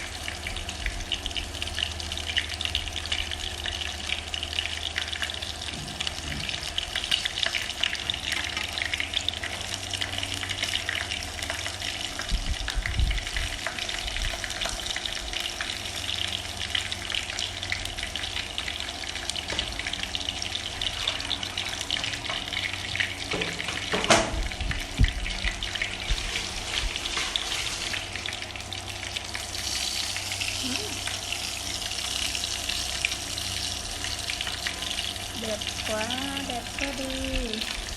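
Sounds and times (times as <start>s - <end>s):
shrimp deep-frying in oil: 0.0s - 37.9s.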